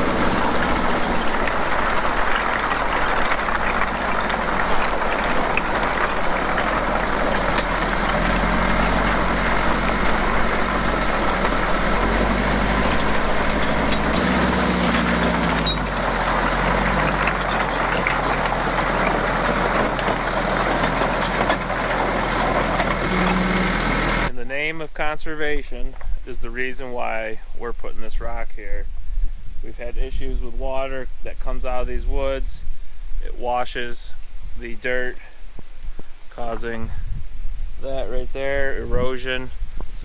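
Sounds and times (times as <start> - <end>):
diesel engine running under load: 0.0 - 24.3.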